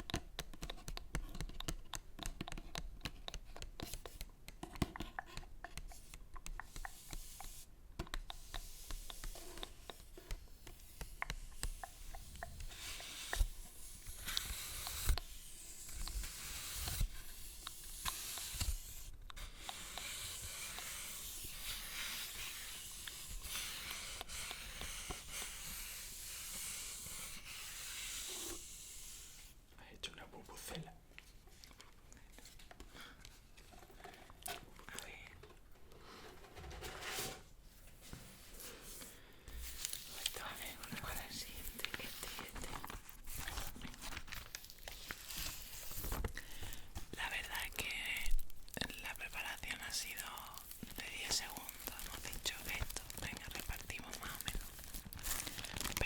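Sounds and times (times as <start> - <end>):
paper crinkling and rustling: 39.6 - 56.0.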